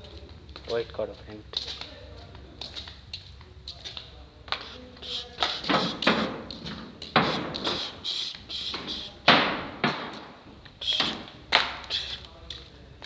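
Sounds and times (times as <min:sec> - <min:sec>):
heavy thumps and knocks: 0:05.4 - 0:11.7.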